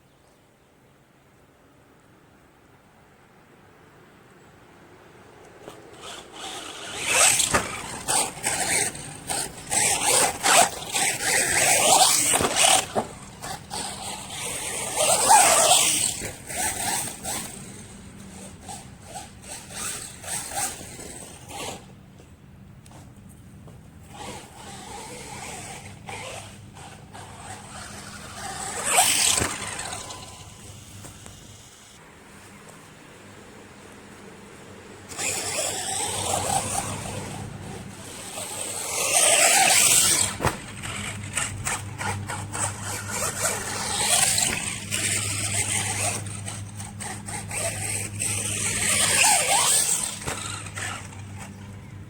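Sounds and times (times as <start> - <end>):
tyres scrabbling on dirt: 5.4 - 52.0
electric motor whine: 5.9 - 21.9, 24.0 - 32.0, 35.1 - 52.0.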